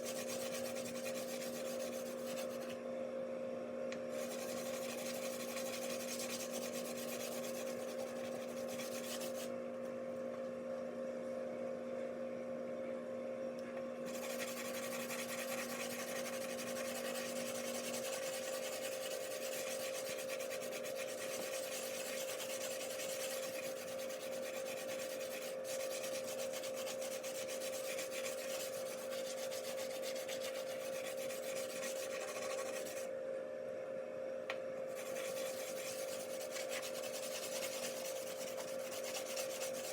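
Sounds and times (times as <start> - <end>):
scratchy rubbing on glass: 0.0 - 2.8, 4.1 - 9.5, 14.1 - 33.1, 34.9 - 39.9
steady hum: 3.9 - 9.5, 13.6 - 33.4, 34.4 - 39.9.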